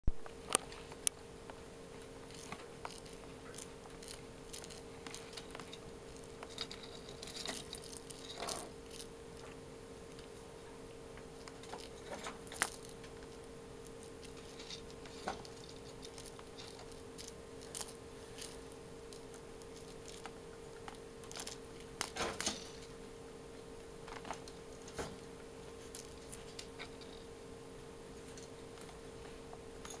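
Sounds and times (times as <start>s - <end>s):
faint steady hum: 0.1s - 30.0s
kitten paws tapping and scuffling: 0.3s - 10.5s, 11.2s - 23.0s.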